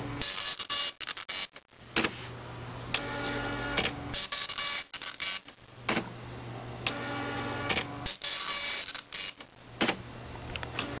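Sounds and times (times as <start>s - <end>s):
printer motor hum: 2.7s - 4.5s, 5.8s - 11.0s
sharp printer clack: 3.0s - 6.1s, 6.9s - 10.0s.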